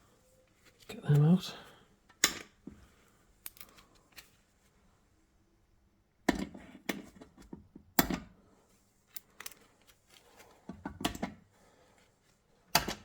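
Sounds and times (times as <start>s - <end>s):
small screws clicking and tapping: 3.4s - 4.3s, 9.1s - 10.2s.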